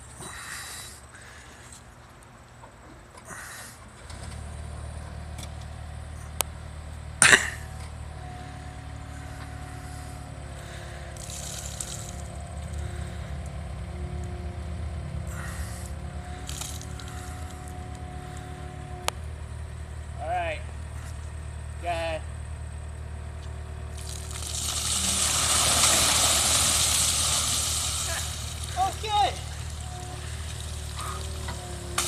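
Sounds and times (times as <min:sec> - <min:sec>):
diesel engine starting and running: 0:00.0 - 0:32.0
whining tones: 0:23.9 - 0:32.0.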